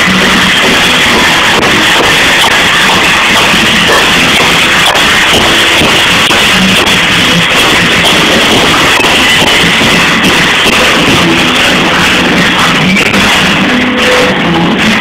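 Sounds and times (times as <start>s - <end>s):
rock music: 0.0s - 15.0s.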